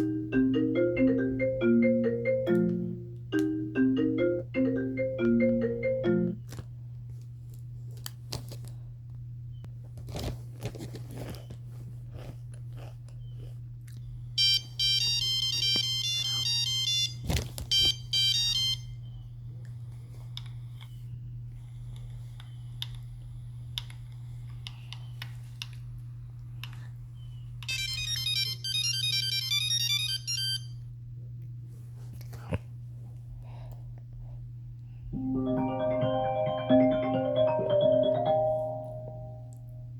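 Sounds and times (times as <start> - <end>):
phone beep ringtone melody: 0.0 - 6.4, 35.2 - 39.5
low steady hum: 0.0 - 16.8, 30.7 - 39.9.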